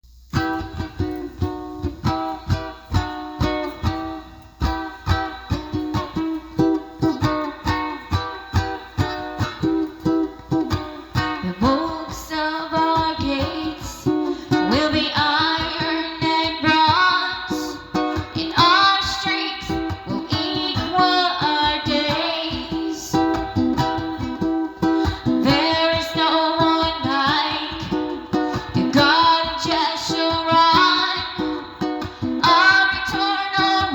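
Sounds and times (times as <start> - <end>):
strummed plucked strings: 0.2 - 33.9
person singing: 0.7 - 33.9.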